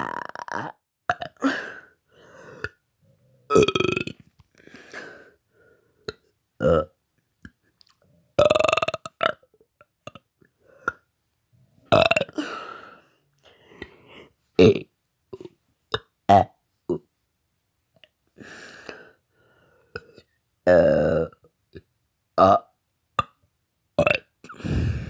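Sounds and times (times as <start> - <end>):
man burping: 0.0 - 1.7, 3.5 - 4.2, 6.1 - 7.0, 8.4 - 10.2, 11.9 - 12.6, 14.6 - 17.0, 20.0 - 21.5, 22.4 - 23.4, 24.0 - 25.0.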